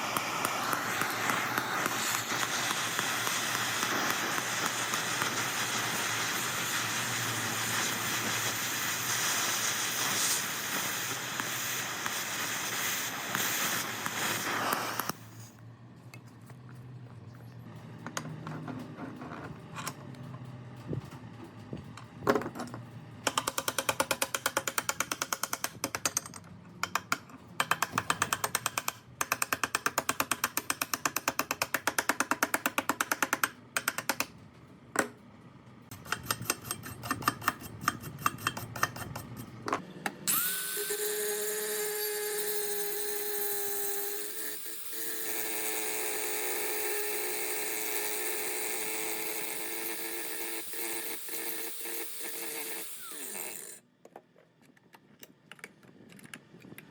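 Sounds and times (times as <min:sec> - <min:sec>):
small power tool whining: 0:00.0 - 0:15.5, 0:40.0 - 0:53.8.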